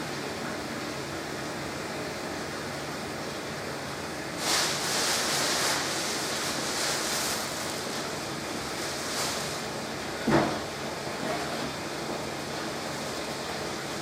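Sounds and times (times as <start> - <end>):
washing machine drum swishing: 4.3 - 10.8.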